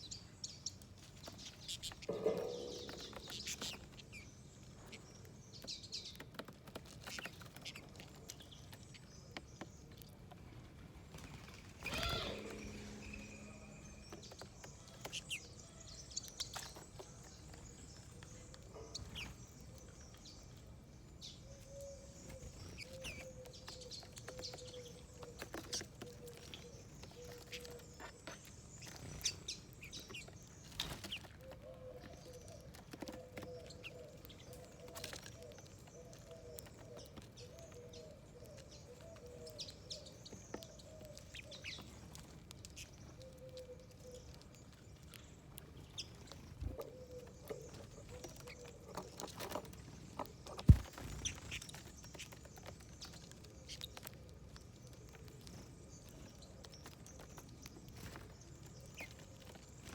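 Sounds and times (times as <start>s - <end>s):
small birds chirping: 0.0s - 59.9s
faint low wavering tone: 12.2s - 14.3s.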